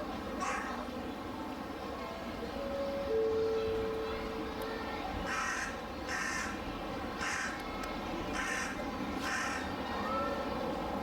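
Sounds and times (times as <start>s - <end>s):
crow cawing: 0.4s - 0.7s, 5.3s - 6.5s, 8.4s - 9.6s.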